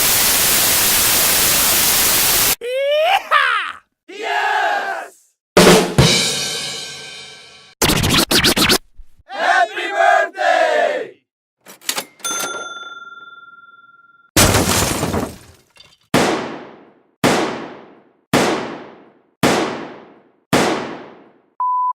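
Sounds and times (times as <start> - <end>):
metallic ding: 11.9 - 13.8
loud crash: 14.4 - 15.7.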